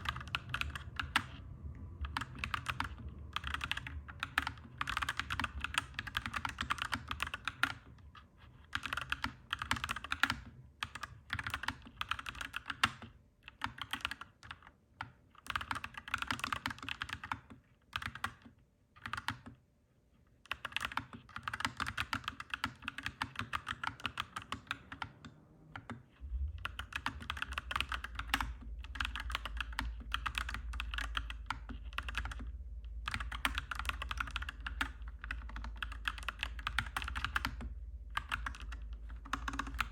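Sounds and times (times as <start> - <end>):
mechanical keyboard typing: 0.0 - 1.4, 2.0 - 19.6, 20.4 - 26.0, 26.6 - 39.9
low steady rumble: 0.0 - 12.7, 22.9 - 39.9.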